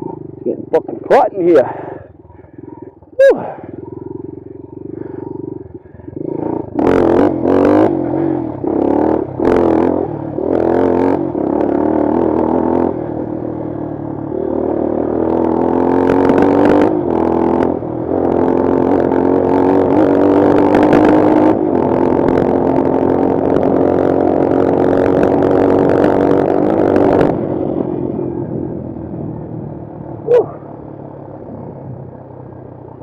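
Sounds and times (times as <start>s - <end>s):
motorcycle engine revving: 0.0s - 33.0s.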